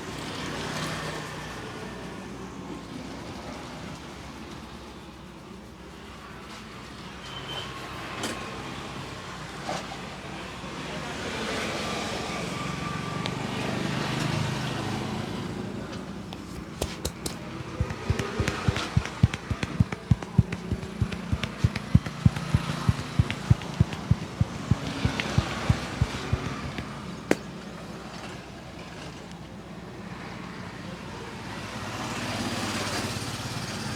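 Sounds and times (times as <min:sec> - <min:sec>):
street traffic: 0:12.4 - 0:27.7
hands slapping on a head: 0:16.4 - 0:27.5.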